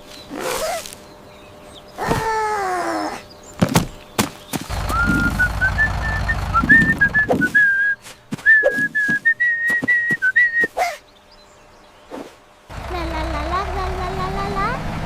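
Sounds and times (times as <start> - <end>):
whistled tune: 4.8 - 10.8.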